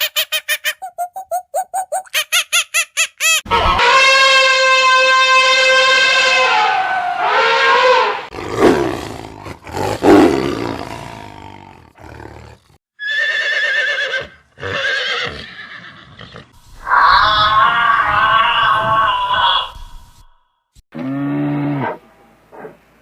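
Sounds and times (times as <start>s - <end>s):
animal roars: 8.3s - 12.8s
horse neighing: 13.0s - 16.5s.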